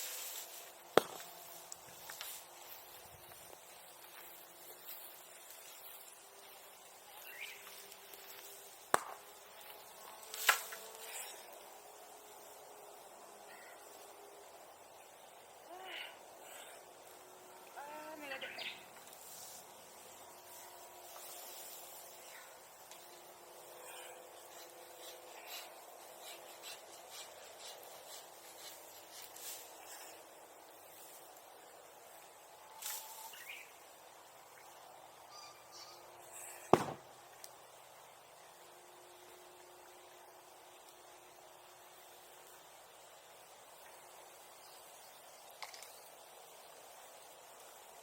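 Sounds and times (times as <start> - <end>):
sharp cracks of burning wood: 0.0 - 11.6, 36.6 - 37.8
flame hissing: 0.0 - 12.6
bonfire hissing and popping: 0.0 - 35.2, 36.2 - 48.0.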